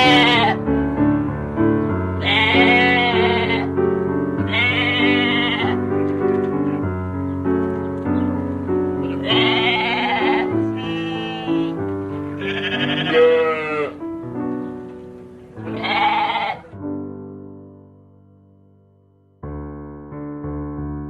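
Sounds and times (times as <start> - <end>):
long wavering bleating: 0.0 - 0.6, 2.2 - 3.7, 4.5 - 5.8, 9.0 - 11.8, 12.4 - 14.0, 15.6 - 16.8
gentle piano music: 0.0 - 21.0.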